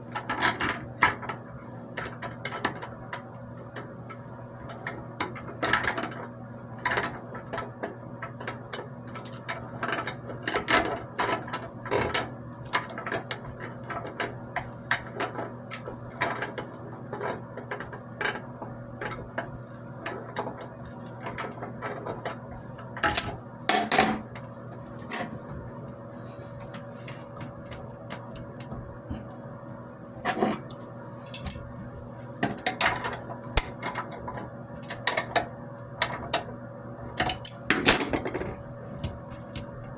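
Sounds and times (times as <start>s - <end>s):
steady low hum: 22.4s - 39.9s
metallic clicks and clanks of tools: 30.3s - 31.7s, 32.4s - 34.2s.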